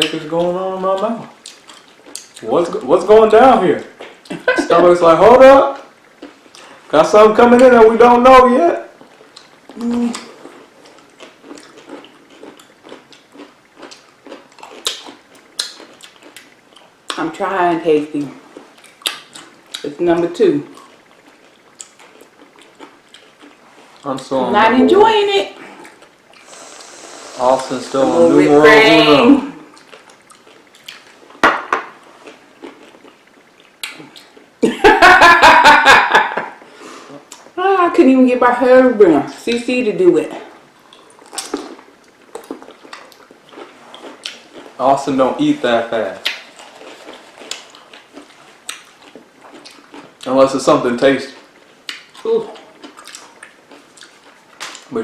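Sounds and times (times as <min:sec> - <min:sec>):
person chewing: 0:00.0 - 0:02.5, 0:05.8 - 0:06.9, 0:09.0 - 0:17.2, 0:18.2 - 0:24.6, 0:25.6 - 0:34.6, 0:40.6 - 0:45.2, 0:46.1 - 0:50.4, 0:51.3 - 0:54.9.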